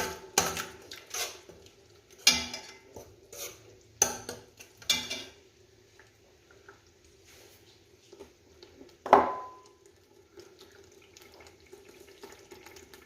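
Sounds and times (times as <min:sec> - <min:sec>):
metal spoon clinking in a pot: 0:02.2 - 0:02.8, 0:04.0 - 0:05.4.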